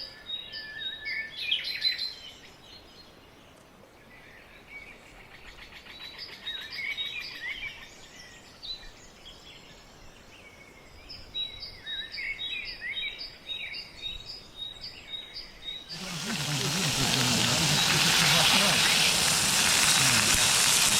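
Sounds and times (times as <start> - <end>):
birds chirping: 15.9 - 20.9.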